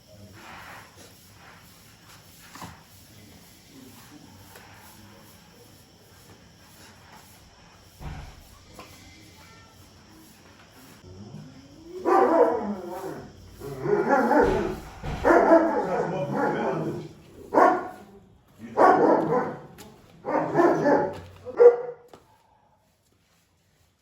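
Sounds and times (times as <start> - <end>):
dog barking: 11.9 - 22.2.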